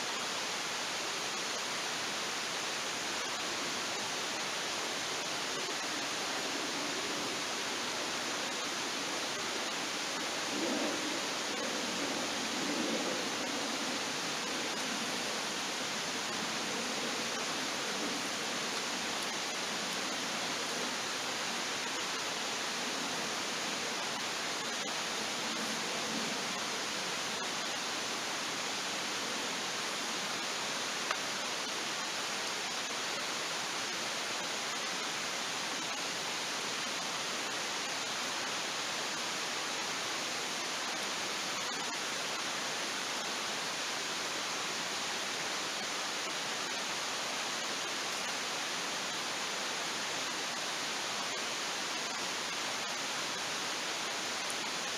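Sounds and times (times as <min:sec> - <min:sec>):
steady rushing noise: 0:04.4 - 0:21.8
faint click: 0:31.1 - 0:31.3.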